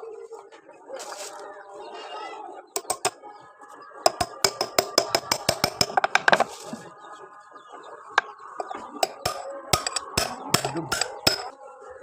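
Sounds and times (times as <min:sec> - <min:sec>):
hammer strikes on metal: 0:02.8 - 0:03.2, 0:04.1 - 0:06.4, 0:08.6 - 0:11.5.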